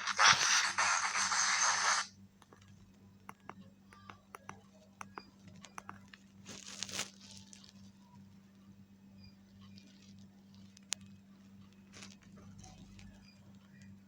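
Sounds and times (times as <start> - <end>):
radio static: 0.0 - 2.1.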